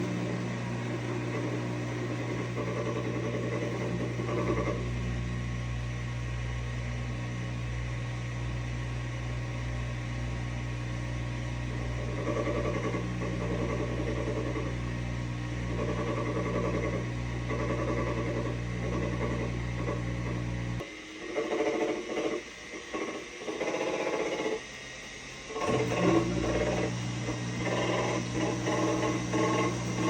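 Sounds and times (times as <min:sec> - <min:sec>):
grinding noise: 0:00.0 - 0:05.4, 0:11.7 - 0:24.6, 0:25.5 - 0:30.0
washing machine motor hum: 0:00.0 - 0:30.0.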